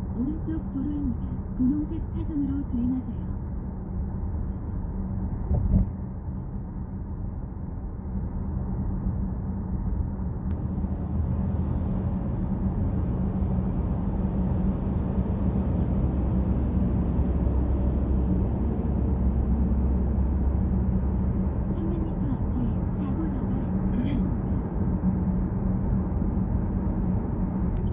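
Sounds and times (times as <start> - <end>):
road and engine rumble in car: 0.0 - 27.9
thump: 5.5 - 6.0.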